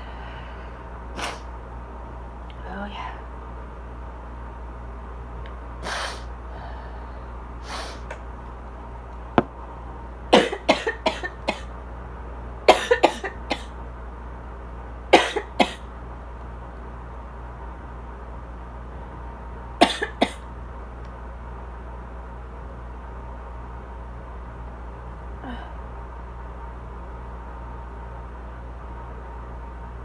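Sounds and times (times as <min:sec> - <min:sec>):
air conditioner humming: 0:00.0 - 0:30.0
sharp breaths in: 0:05.8 - 0:08.2
short rapid dry coughs: 0:10.3 - 0:11.7, 0:12.7 - 0:13.7, 0:15.2 - 0:15.8, 0:19.8 - 0:20.4.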